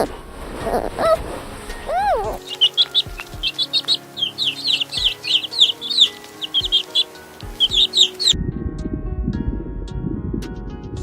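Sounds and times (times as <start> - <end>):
music: 0.1 - 11.0
chicks peeping: 1.8 - 8.4.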